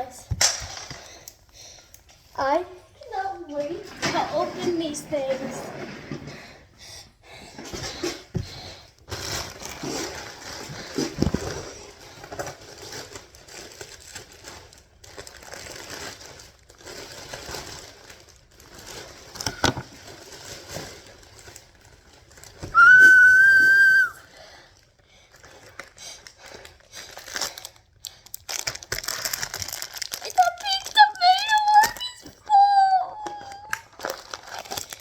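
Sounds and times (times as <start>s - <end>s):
packaging rustling and crinkling: 9.0s - 35.0s
high whistle-like tone: 22.8s - 24.2s
packaging tearing: 25.3s - 32.2s, 33.2s - 35.0s.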